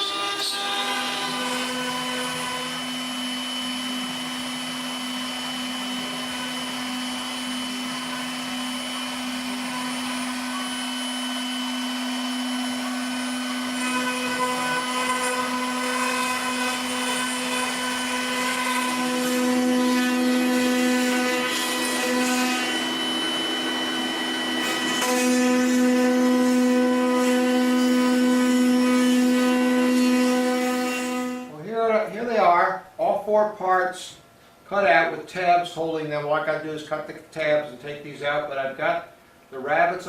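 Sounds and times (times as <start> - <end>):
router spindle whining: 0.0 - 31.5
router cutting wood: 0.0 - 31.6.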